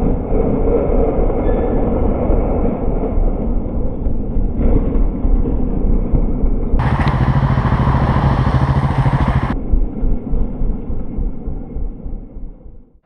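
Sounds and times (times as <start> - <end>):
wind rumble on microphone: 0.0 - 12.9
motorcycle engine drone: 2.6 - 13.0.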